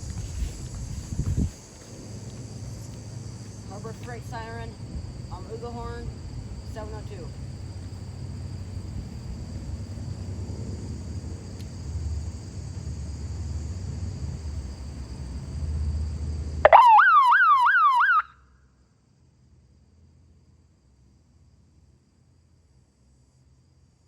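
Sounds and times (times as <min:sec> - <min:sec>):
electronic alarm siren yelping: 0:16.6 - 0:18.3.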